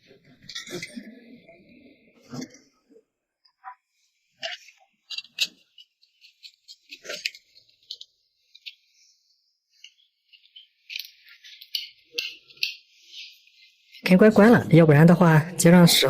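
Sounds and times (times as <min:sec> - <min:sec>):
small clicks and metallic rattles: 0:04.4 - 0:09.1, 0:09.8 - 0:14.0.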